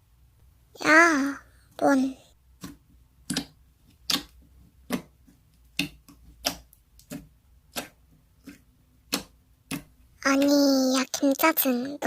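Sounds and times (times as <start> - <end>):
sticky slime clicks: 2.6 - 10.5.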